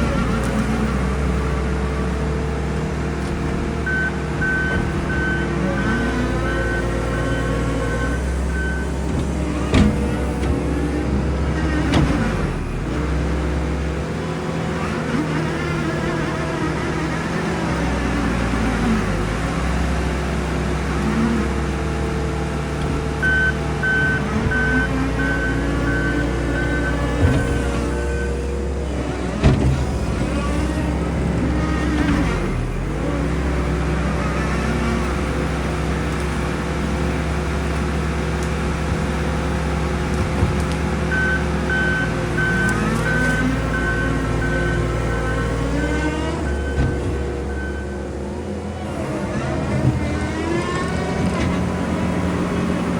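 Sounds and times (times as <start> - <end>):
diesel engine droning: 0.0 - 52.9
backup alarm beeping: 3.8 - 9.1, 23.2 - 28.4, 41.1 - 48.1.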